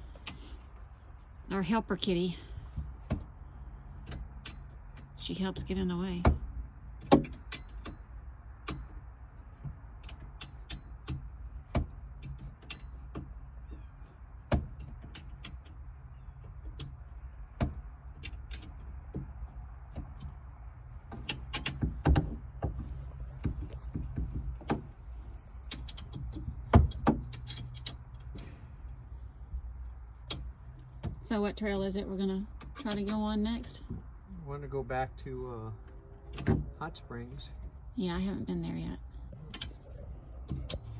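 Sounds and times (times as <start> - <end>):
low hum: 0.0 - 40.9
tools and metal parts knocking: 25.6 - 28.5.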